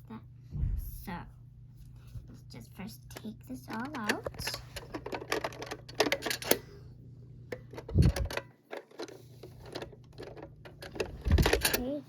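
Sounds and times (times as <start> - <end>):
low thump: 0.6 - 1.1.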